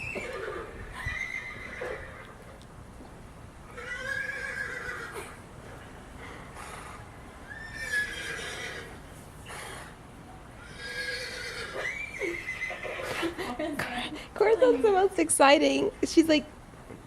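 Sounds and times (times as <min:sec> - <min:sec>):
horse whinny ringtone: 0:10.6 - 0:13.0.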